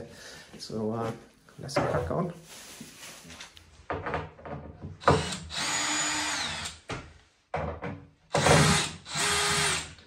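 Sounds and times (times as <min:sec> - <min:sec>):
power drill running in bursts: 0:05.0 - 0:06.7, 0:08.4 - 0:10.0.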